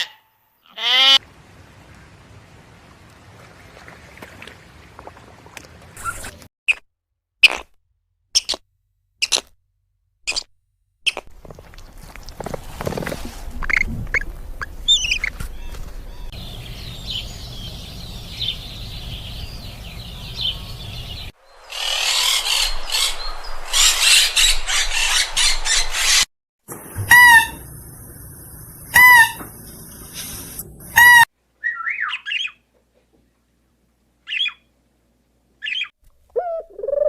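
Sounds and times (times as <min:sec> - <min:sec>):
birds calling: 0:13.6 - 0:32.6.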